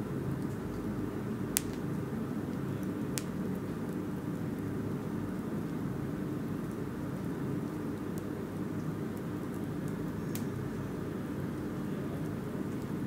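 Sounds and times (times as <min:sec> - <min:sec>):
fire crackling pops: 0:00.0 - 0:13.0
fire flames rumbling: 0:00.0 - 0:13.0.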